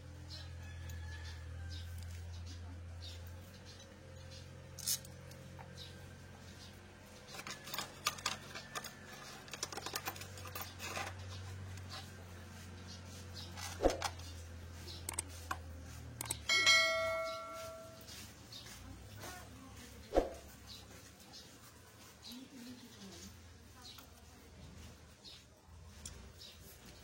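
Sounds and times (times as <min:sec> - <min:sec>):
metal clicks and taps: 0:15.0 - 0:16.7
low steady hum: 0:15.0 - 0:20.2
metallic ring: 0:16.2 - 0:18.1.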